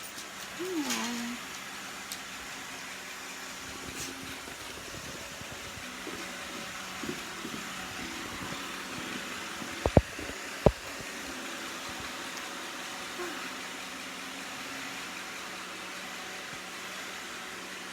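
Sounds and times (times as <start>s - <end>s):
short dull thumps: 9.6s - 11.2s.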